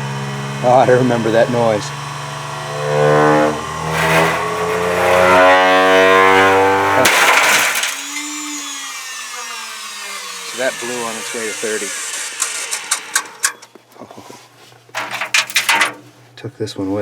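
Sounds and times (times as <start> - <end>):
electric motor whining: 0.0 - 13.8
clay record shattering: 7.0 - 8.8, 15.0 - 16.1.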